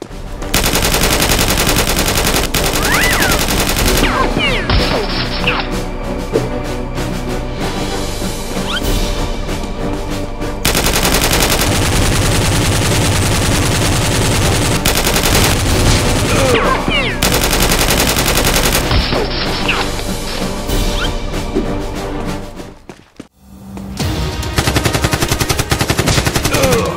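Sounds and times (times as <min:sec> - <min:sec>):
action background music: 0:00.0 - 0:26.9
automatic gunfire bursts: 0:00.5 - 0:04.2, 0:10.7 - 0:16.5, 0:17.2 - 0:19.1.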